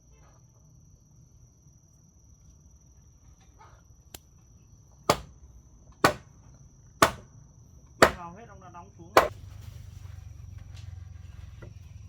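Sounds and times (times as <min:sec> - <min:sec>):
hammer blows on timber: 0:05.1 - 0:05.4, 0:06.0 - 0:06.3, 0:07.0 - 0:07.3, 0:08.0 - 0:08.4.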